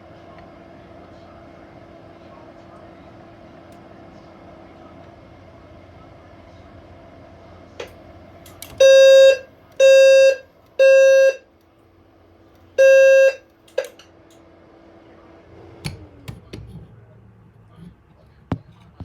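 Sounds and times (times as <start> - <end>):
low buzzy alarm tone blasts: 8.8 - 11.4, 12.8 - 13.4.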